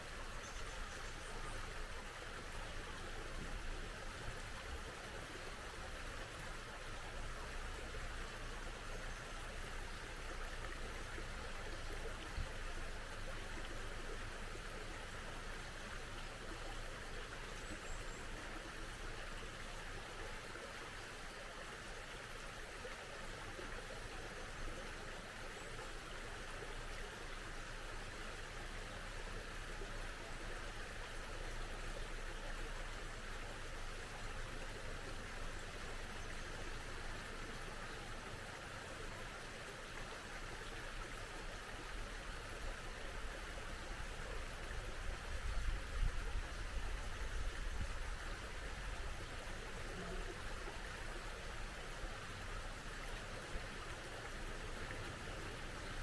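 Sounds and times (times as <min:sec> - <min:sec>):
faint bird chirp: 0:00.0 - 0:02.2, 0:17.2 - 0:18.8
mountain stream flowing: 0:00.0 - 0:56.0.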